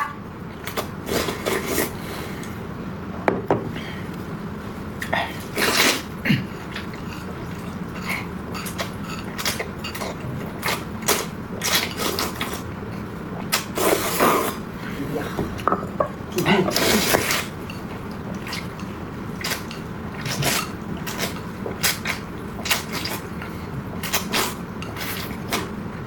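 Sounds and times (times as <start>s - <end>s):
noodle slurp: 19.4s - 23.3s.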